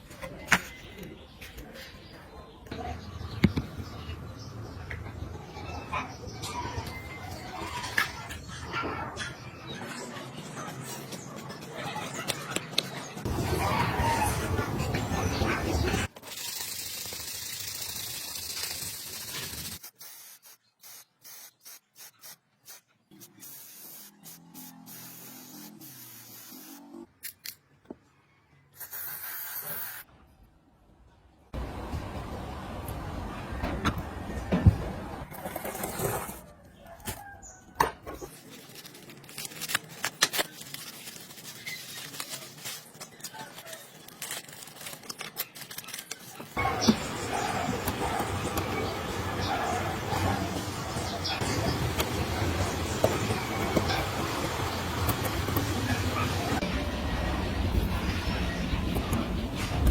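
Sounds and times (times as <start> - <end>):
pressurised spray hissing: 16.5 - 26.8.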